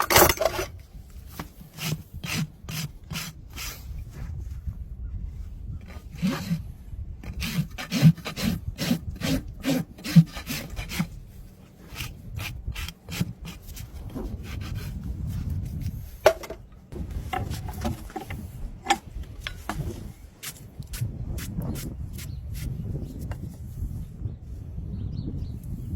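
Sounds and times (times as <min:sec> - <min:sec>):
rasp scraping hoof: 0:00.0 - 0:04.2, 0:05.9 - 0:16.6.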